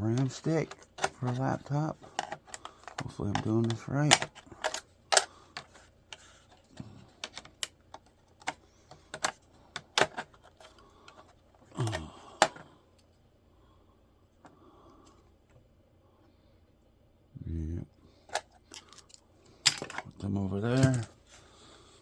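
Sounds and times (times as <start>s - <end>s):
small parts clicking and clattering: 0.0s - 12.6s, 18.2s - 21.1s.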